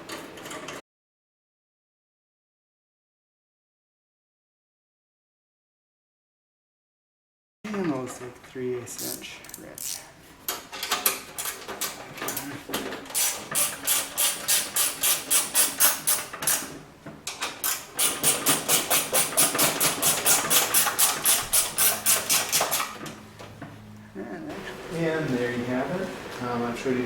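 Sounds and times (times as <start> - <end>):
ratchet wrench clicking: 9.0 - 10.1, 13.2 - 16.6, 18.0 - 22.9.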